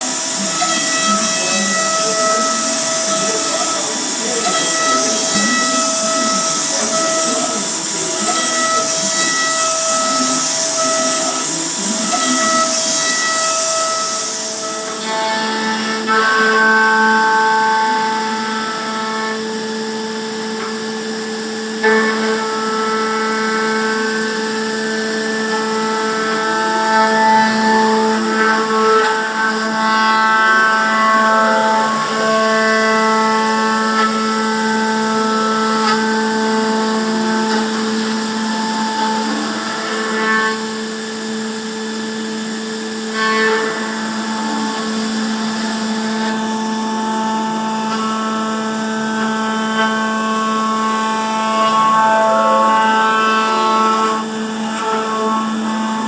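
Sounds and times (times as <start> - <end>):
milling machine whine: 0.0 - 56.0.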